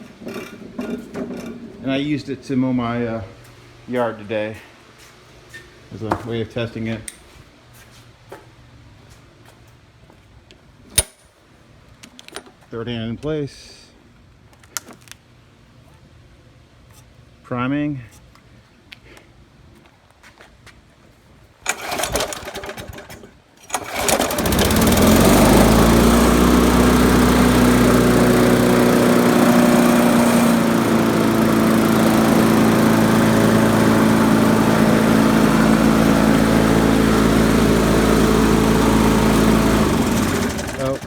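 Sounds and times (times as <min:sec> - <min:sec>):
lawnmower engine running: 0:00.0 - 0:02.2, 0:21.7 - 0:41.0
lawnmower engine sputtering: 0:21.6 - 0:41.0.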